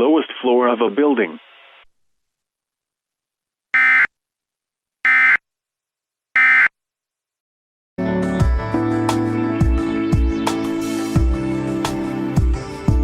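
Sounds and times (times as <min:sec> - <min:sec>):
music: 0:08.0 - 0:13.0.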